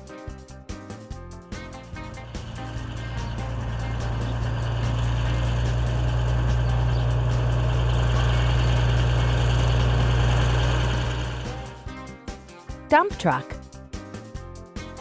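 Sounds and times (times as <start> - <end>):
truck engine rumbling: 1.5 - 11.9.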